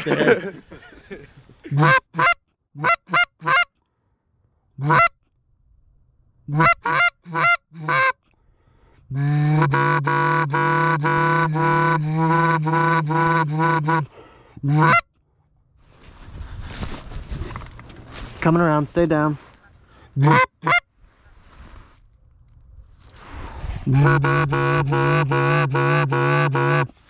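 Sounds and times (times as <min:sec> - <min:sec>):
goose honking: 0:24.0 - 0:27.0.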